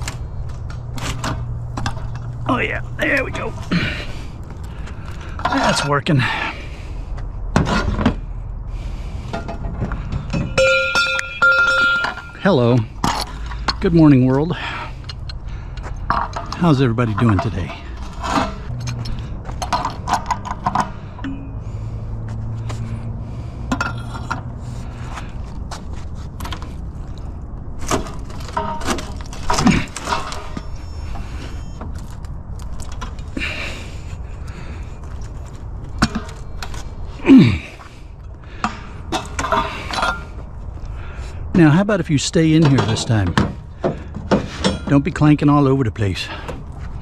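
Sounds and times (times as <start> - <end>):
low steady hum: 0.0 - 47.0
scrap metal knocks and scrapes: 7.5 - 8.3, 16.1 - 21.9
scrap metal clinking: 9.3 - 13.9
metal clanks: 9.3 - 21.8, 27.8 - 33.8, 35.9 - 40.5, 42.5 - 45.3.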